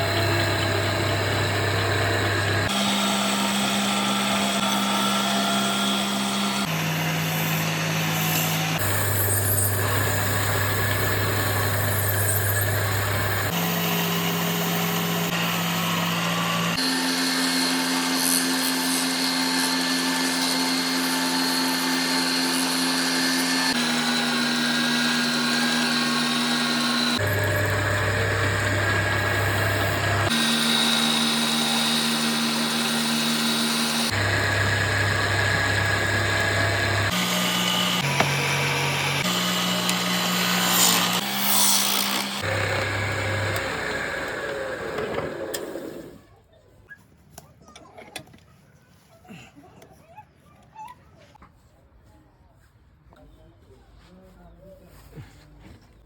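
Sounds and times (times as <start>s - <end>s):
electric power tool motor whine: 0.0s - 46.2s.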